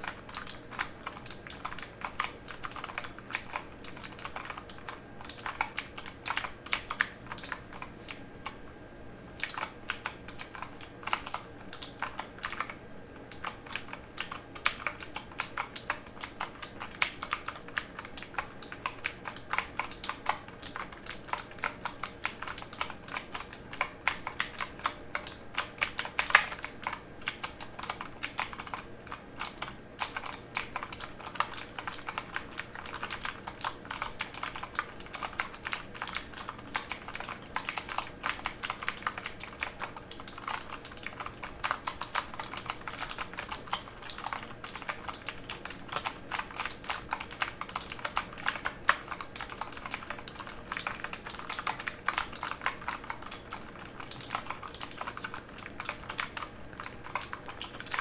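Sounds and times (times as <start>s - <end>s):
mechanical keyboard key clicks: 13.3s - 58.0s.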